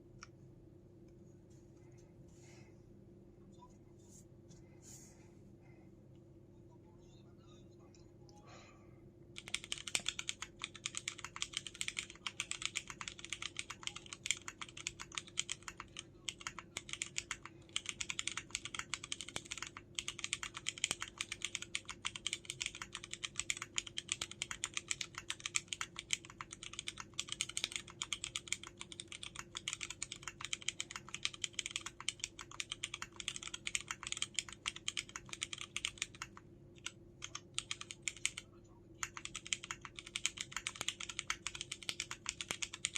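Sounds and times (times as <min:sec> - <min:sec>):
fast typing on mechanical keyboard: 0:09.4 - 0:42.9.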